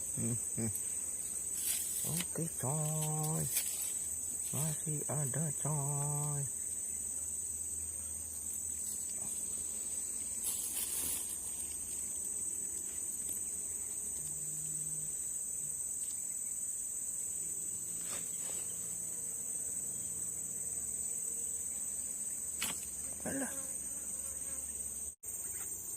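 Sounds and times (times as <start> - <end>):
insects chirping: 0.0 - 25.9
noisy rustle: 10.4 - 12.0.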